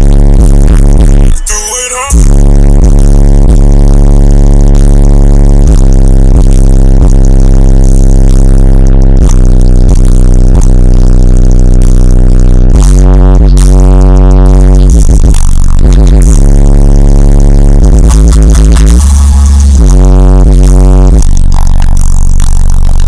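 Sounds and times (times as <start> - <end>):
loud deep subwoofer bass: 0.0 - 23.0.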